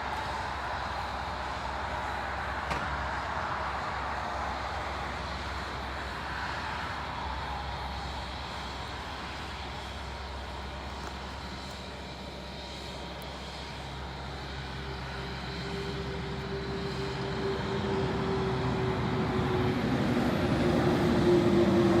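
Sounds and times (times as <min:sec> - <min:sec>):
engine humming: 0:00.0 - 0:22.0.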